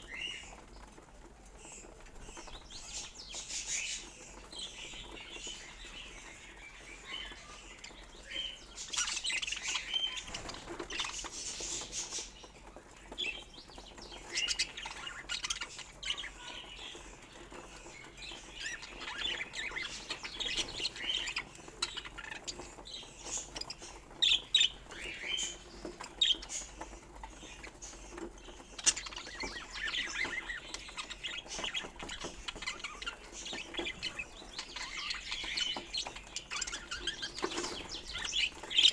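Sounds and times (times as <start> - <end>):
budgerigars chirping: 1.6 - 38.9.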